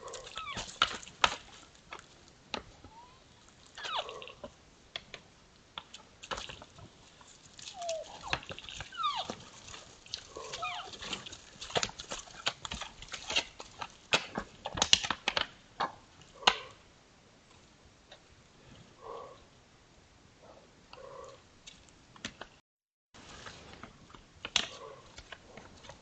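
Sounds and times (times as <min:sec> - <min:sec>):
deer whining calls: 0:02.8 - 0:04.5, 0:07.7 - 0:09.4, 0:10.3 - 0:11.0.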